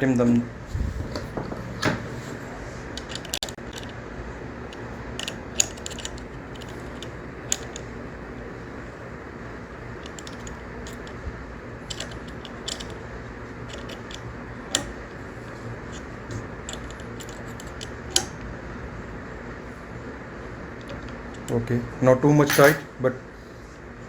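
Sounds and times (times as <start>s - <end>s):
steady low hum: 0.0s - 24.0s
small clicks and taps of parts: 3.0s - 4.0s, 4.7s - 7.9s, 11.9s - 13.0s, 13.7s - 15.0s.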